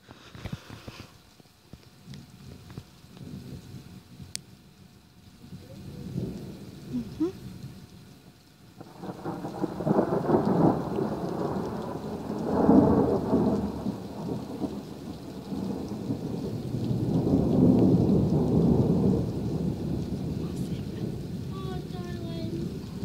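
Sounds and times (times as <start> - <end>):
rolling thunder: 5.4 - 7.6, 8.8 - 23.0.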